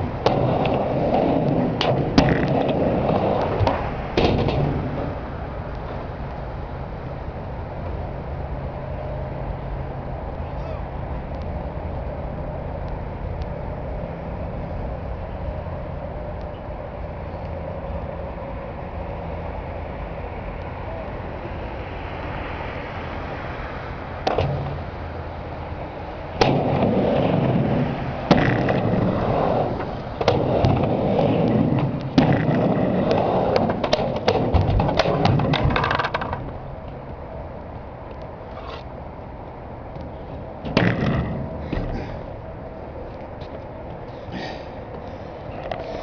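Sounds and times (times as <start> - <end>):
skateboard clacking on coping: 0.0 - 6.2, 26.4 - 37.0
background hum: 0.0 - 46.0
skateboard wheels rolling: 0.0 - 46.0.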